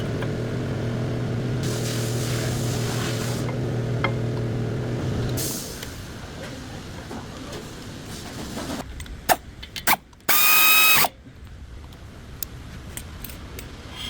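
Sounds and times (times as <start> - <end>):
power tool whining: 10.3 - 11.1.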